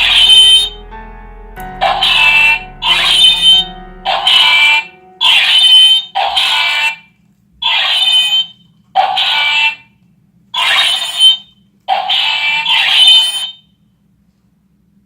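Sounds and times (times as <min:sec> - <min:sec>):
shrill buzzy electronic toy tones: 0:01.8 - 0:07.0, 0:10.6 - 0:13.6.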